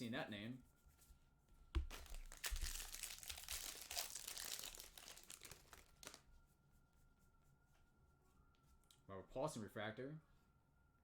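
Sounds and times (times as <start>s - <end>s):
foil wrapper crinkling: 1.8s - 6.2s.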